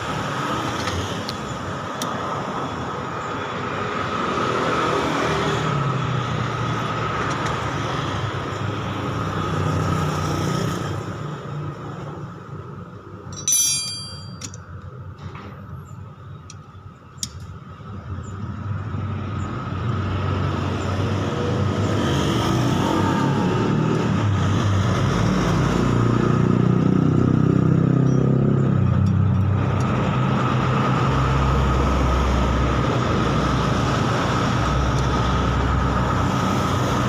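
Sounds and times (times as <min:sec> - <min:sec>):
sharp high-pitched clink: 0:13.3 - 0:14.7.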